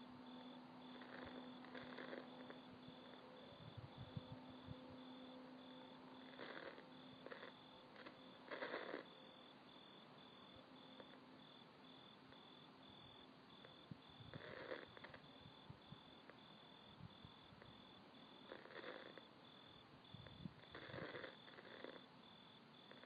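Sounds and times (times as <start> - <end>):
faint pulsing high tone: 0.0 - 8.5.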